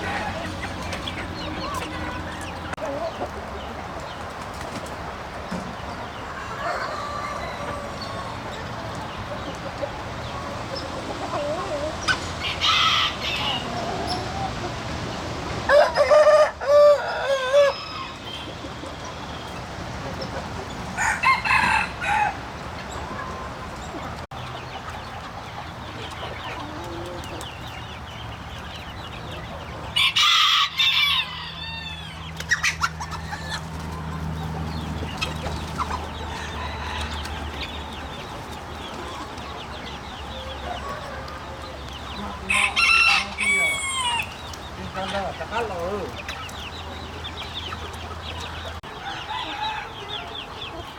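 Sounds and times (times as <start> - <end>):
chickens clucking: 0.0 - 50.9
rooster crowing: 6.3 - 8.4, 12.4 - 13.9, 15.7 - 18.2, 21.0 - 22.5, 30.0 - 32.2, 36.2 - 37.7, 42.3 - 44.4, 48.9 - 50.4.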